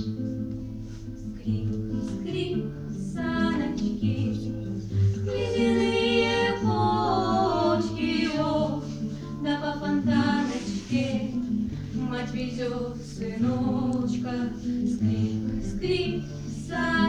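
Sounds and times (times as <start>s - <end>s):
voices singing slow song: 1.4s - 17.0s.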